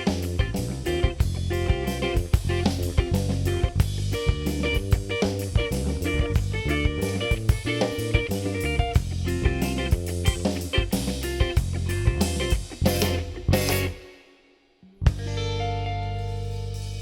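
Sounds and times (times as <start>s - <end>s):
drum kit beat: 0.0s - 14.1s
bass guitar: 0.0s - 14.2s, 14.8s - 17.0s
guitar: 0.0s - 17.0s.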